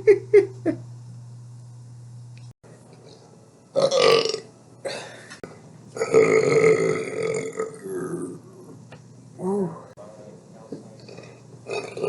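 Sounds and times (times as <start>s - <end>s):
person belching: 3.8s - 5.1s, 6.0s - 8.4s, 11.7s - 12.0s.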